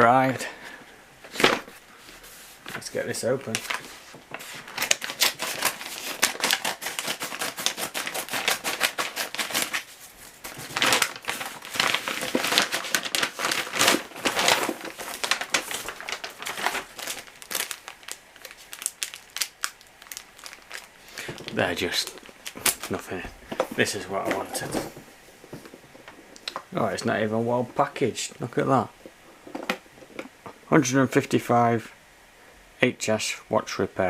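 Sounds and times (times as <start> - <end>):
packaging crinkling and rustling: 1.3 - 27.2.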